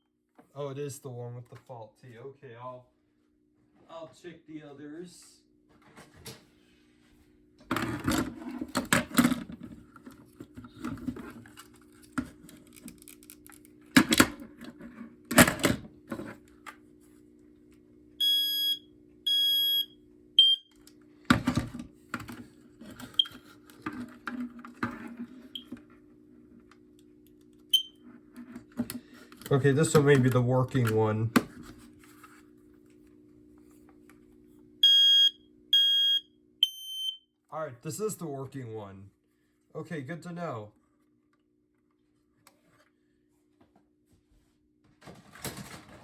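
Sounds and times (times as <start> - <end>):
smoke alarm beeps and chirps: 18.2 - 20.7, 27.7 - 28.0, 34.8 - 37.3
knocks and clatter of handling: 44.9 - 46.0.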